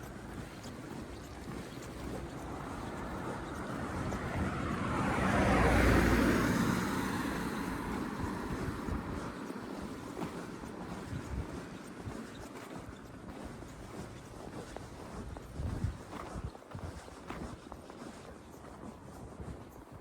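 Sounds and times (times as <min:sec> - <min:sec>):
vehicle passing by: 0:00.0 - 0:11.0.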